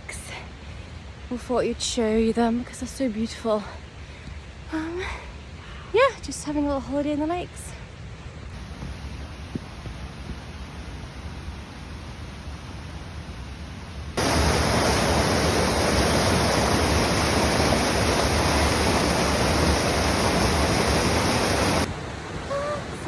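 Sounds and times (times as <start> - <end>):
waterfall roaring: 8.6 - 23.0.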